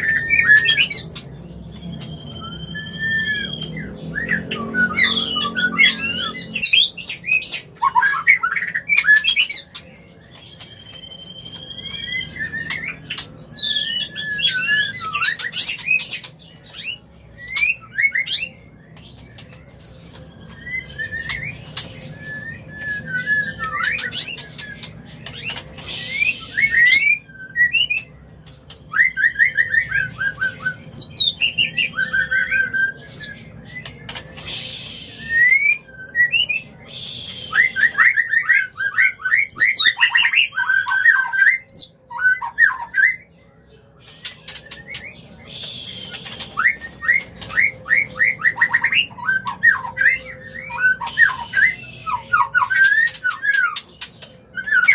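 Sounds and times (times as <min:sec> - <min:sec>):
bird singing whistles and trills: 0:00.0 - 0:54.9
harsh hissing bird note: 0:25.8 - 0:27.0, 0:34.3 - 0:35.6, 0:36.8 - 0:38.0, 0:45.3 - 0:46.6, 0:51.0 - 0:52.0.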